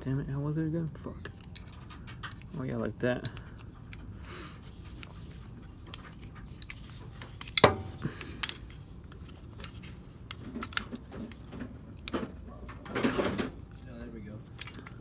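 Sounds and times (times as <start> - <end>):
clicks and clinks of small parts: 1.2 - 12.5, 14.4 - 15.0
sharp knock: 7.6 - 8.0.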